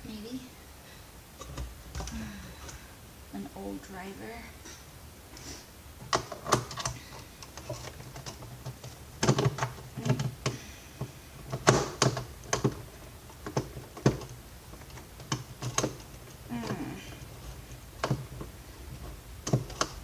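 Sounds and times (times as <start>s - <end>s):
hand tools clicking and clattering: 6.0s - 10.6s, 11.4s - 20.0s.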